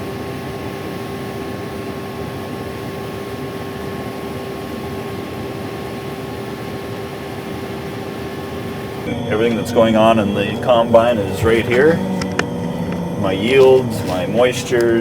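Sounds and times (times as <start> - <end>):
combine harvester running: 8.4 - 15.0.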